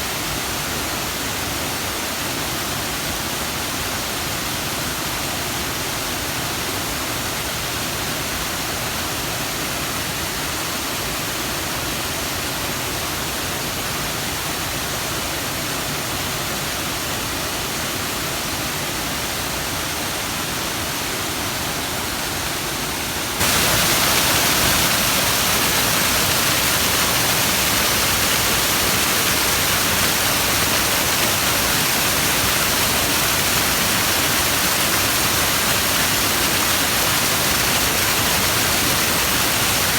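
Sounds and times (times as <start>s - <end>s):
waterfall rushing: 19.5s - 39.9s.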